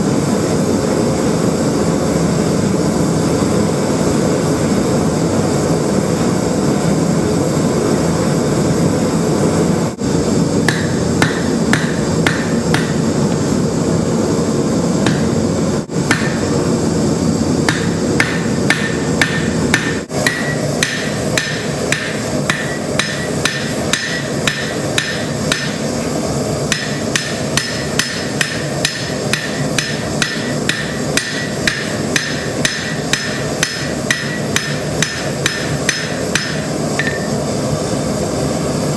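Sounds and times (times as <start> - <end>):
gas forge roaring: 0.0 - 38.9
hammer striking steel on anvil: 10.6 - 13.1, 15.0 - 15.4, 16.0 - 16.6, 17.7 - 26.0, 26.7 - 37.4.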